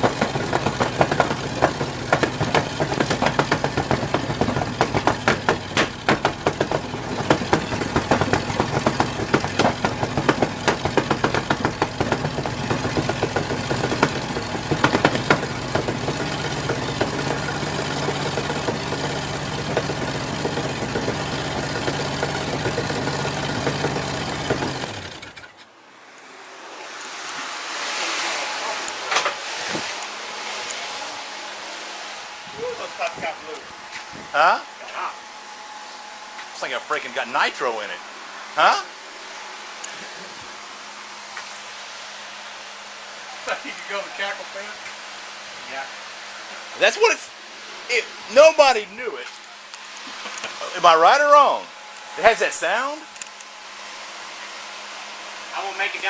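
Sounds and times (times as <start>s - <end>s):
engine lumpy idle with cracks: 0.0s - 25.7s, 49.2s - 50.8s.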